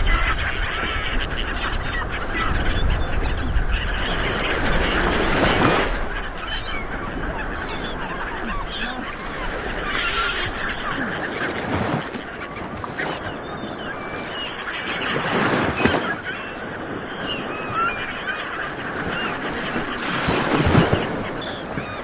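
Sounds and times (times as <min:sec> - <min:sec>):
flock of birds calling: 0:00.0 - 0:22.0
ocean waves washing on shore: 0:00.0 - 0:22.0.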